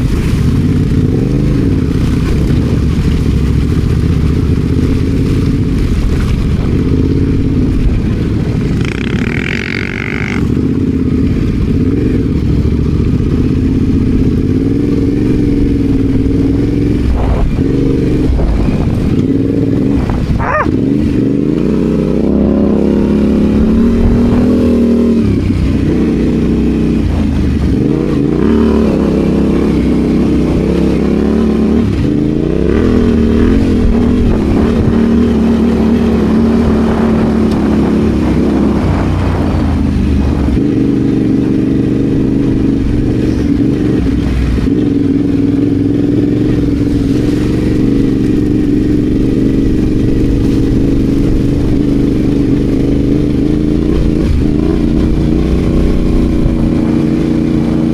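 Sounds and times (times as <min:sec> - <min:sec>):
motorcycle engine revving: 0:00.0 - 0:57.9.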